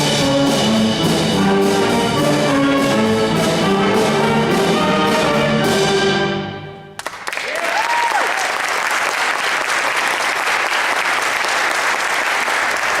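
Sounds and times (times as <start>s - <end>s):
brass chord: 0.0s - 7.0s
audience applause: 7.0s - 13.0s.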